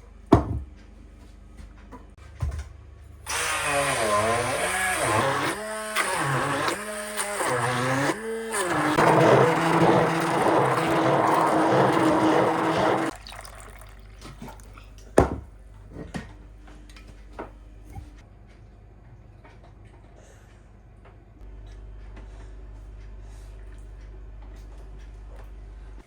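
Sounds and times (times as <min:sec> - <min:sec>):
running water: 0:09.0 - 0:14.8.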